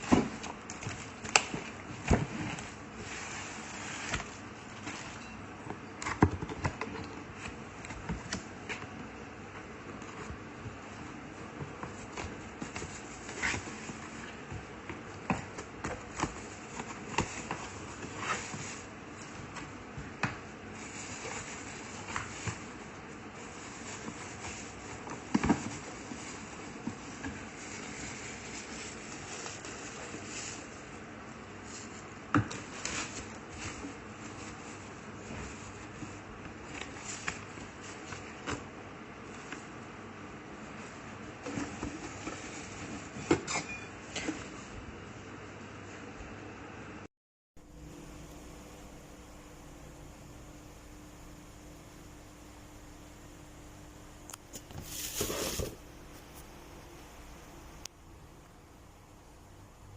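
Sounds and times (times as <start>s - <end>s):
steady rustle: 47.9s - 59.9s.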